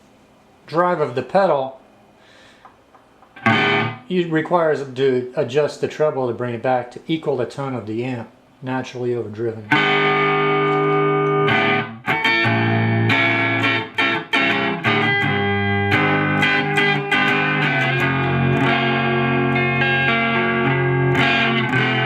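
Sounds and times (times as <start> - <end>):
overdriven electric guitar chords: 3.3 - 4.1, 9.7 - 22.0.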